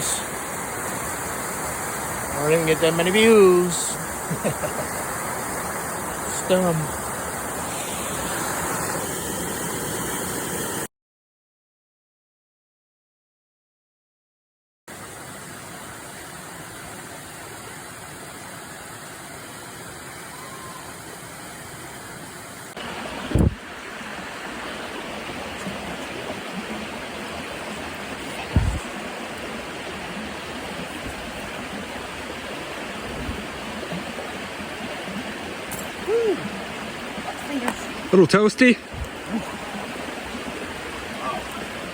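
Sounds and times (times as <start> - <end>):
flowing water rushing: 0.0 - 10.9, 14.9 - 41.9
low thumps: 23.2 - 23.7, 28.4 - 29.0.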